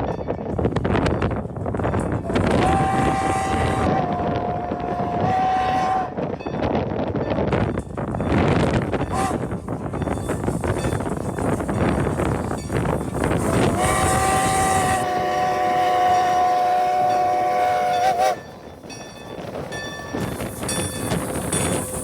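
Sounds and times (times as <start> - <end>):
moving train rumbling: 0.0 - 22.0
locomotive whistle blast: 2.2 - 6.3, 9.1 - 9.6, 13.2 - 18.7.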